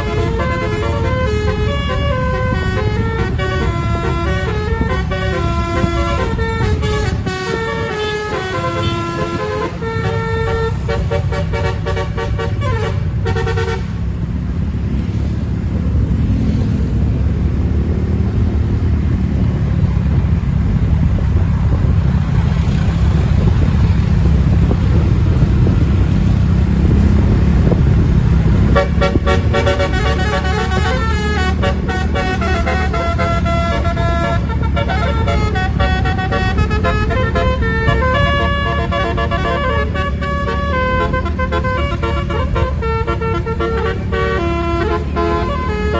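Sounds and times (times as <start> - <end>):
multi-tone bus horn tune: 0.0 - 14.3, 26.7 - 45.9
vehicle engine rumble: 0.0 - 45.9.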